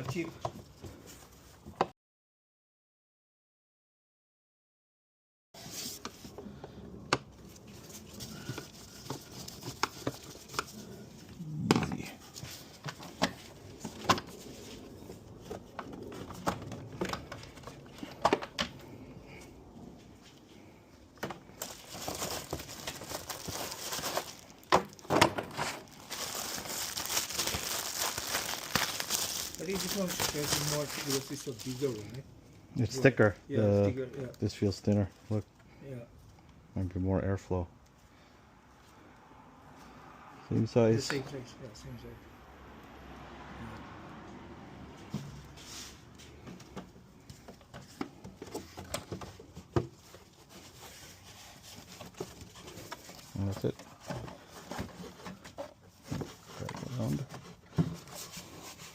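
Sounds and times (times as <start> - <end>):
packaging crinkling and rustling: 21.5 - 32.2
sharp packaging crackles: 21.5 - 32.2.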